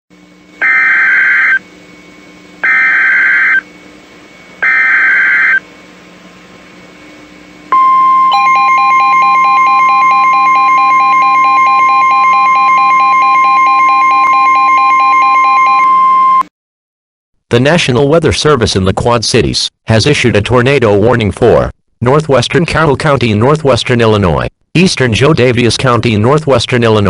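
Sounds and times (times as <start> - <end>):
steady attention tone: 0.2 - 3.9, 4.5 - 5.8, 7.1 - 16.5
harsh data-tone bursts: 0.6 - 1.6, 2.6 - 3.6, 4.6 - 5.6, 8.3 - 16.4
rapidly pulsing beep: 0.6 - 1.6, 2.6 - 3.6, 4.6 - 5.6, 7.8 - 16.4.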